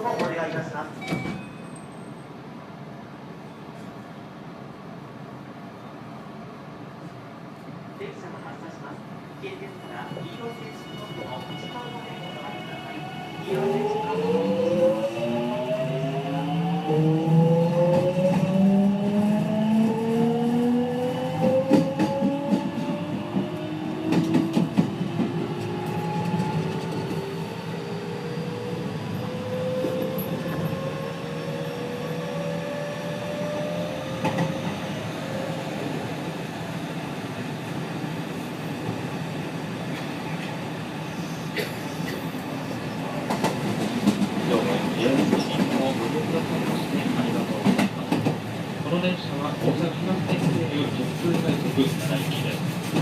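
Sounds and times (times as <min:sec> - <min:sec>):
train running noise: 0:21.3 - 0:37.0, 0:38.1 - 0:53.0.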